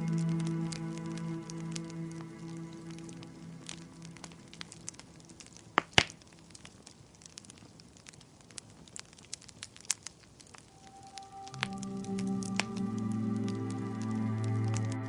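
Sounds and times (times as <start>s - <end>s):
soft music: 0.0s - 5.6s, 10.6s - 15.0s
wood fire crackling: 0.0s - 15.0s.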